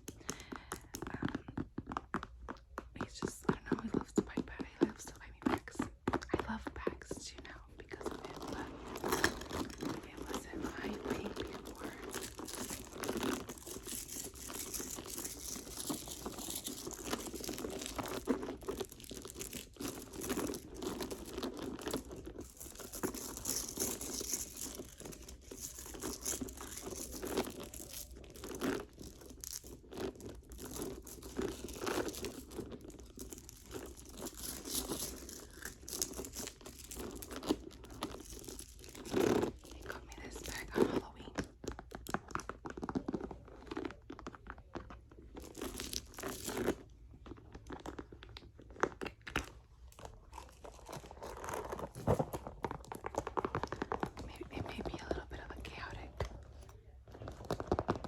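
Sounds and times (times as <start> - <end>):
rustling and crinkling: 0.0 - 58.0.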